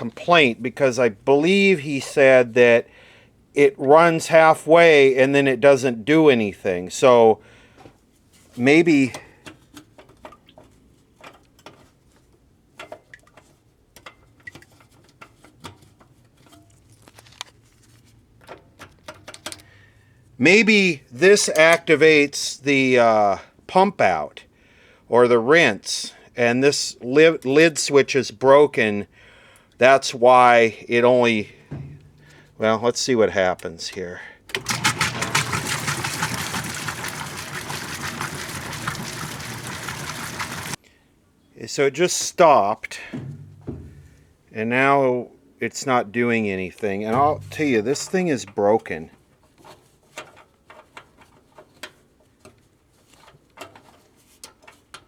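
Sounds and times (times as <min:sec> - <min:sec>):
washer lid clicks and taps: 0:31.7 - 0:32.2, 0:43.2 - 0:44.2
washing machine running: 0:34.5 - 0:40.8, 0:47.2 - 0:47.7
water splashing in tub: 0:34.6 - 0:40.8, 0:47.2 - 0:48.1.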